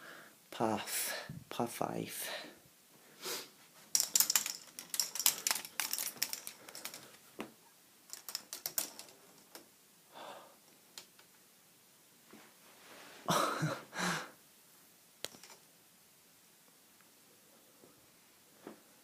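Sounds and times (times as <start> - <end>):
balls clattering through plastic track: 3.9 - 7.1, 8.1 - 9.7, 15.3 - 15.6.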